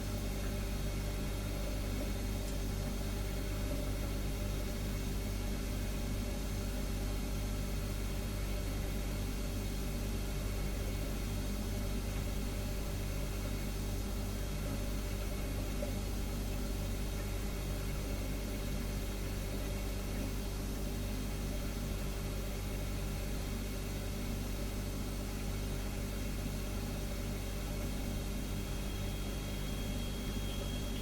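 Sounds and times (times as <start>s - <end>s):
refrigerator compressor humming: 0.0s - 31.0s
faint high whine: 27.0s - 31.0s.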